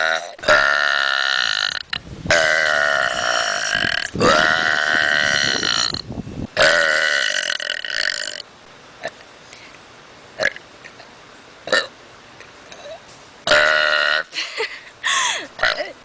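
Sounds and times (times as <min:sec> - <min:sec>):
person burping: 0:00.0 - 0:06.0, 0:06.6 - 0:08.4, 0:12.7 - 0:14.4, 0:15.5 - 0:16.0.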